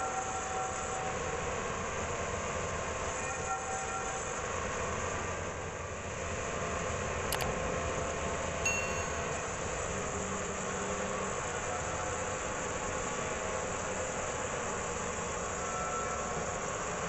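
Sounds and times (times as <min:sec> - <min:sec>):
sawmill humming: 0:06.1 - 0:17.0
sharp click: 0:07.3 - 0:07.5
short metallic ring: 0:08.6 - 0:09.5.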